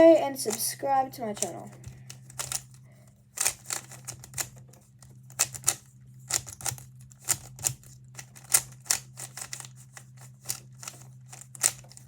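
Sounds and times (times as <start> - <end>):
puzzle cube plastic clicks: 1.3 - 2.8, 3.4 - 4.7, 5.3 - 12.0.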